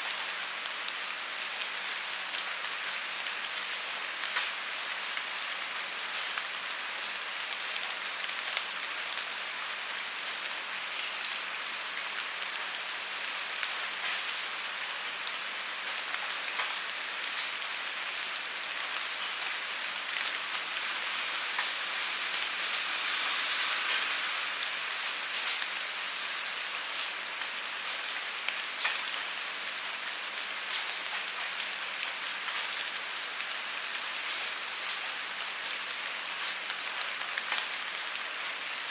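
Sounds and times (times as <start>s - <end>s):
steady rain hiss: 0.0s - 38.9s
raindrop ticks: 4.2s - 4.6s, 16.1s - 17.6s, 28.5s - 29.3s, 36.4s - 38.6s.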